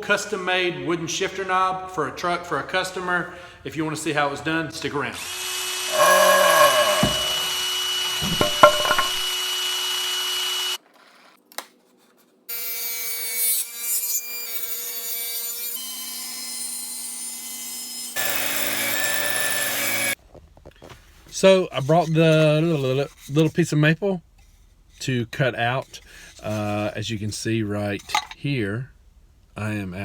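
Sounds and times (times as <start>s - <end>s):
power tools cutting and sanding wood: 5.2s - 10.8s, 12.5s - 20.2s.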